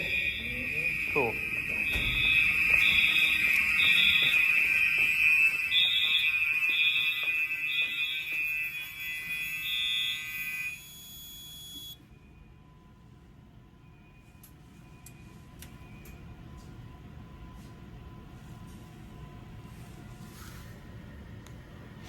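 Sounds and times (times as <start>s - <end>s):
fire alarm horn pulsing: 0.0s - 12.8s
fire alarm horn steady tone: 0.0s - 18.6s.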